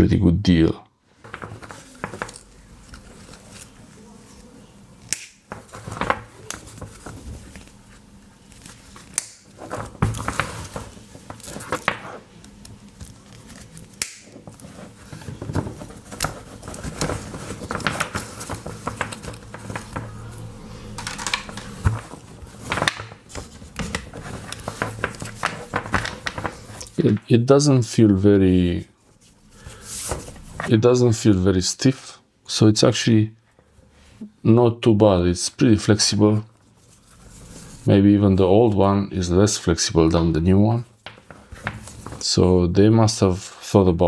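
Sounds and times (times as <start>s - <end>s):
cables rustling: 5.6s - 27.3s.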